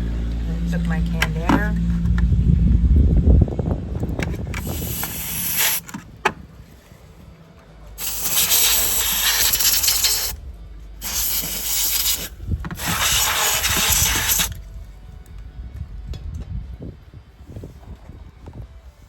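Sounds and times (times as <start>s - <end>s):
compressed air spraying: 4.6s - 5.9s, 8.0s - 10.4s, 11.0s - 14.6s.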